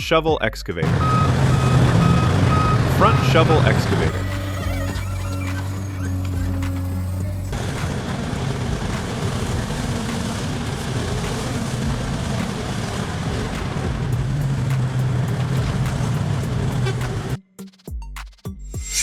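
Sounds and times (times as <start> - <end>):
excavator engine rumbling: 0.8 - 17.4.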